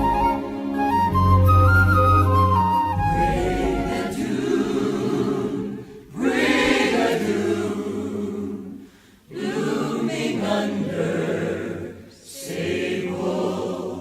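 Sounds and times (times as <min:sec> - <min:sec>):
flute melody: 0:00.0 - 0:04.6
soft orchestral backing: 0:00.0 - 0:06.2
choir singing sustained chords: 0:02.6 - 0:14.0.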